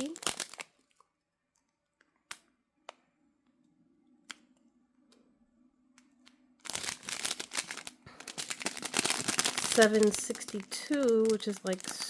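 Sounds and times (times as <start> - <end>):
plastic bags crinkling: 0.0 - 1.0, 6.6 - 12.0.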